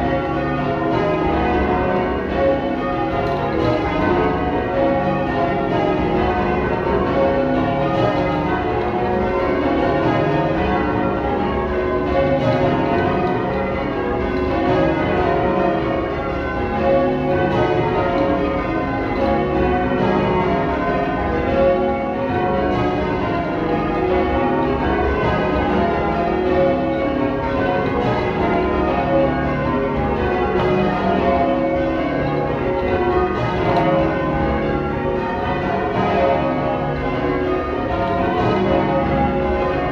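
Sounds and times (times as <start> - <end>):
church bells ringing: 0.0 - 39.9.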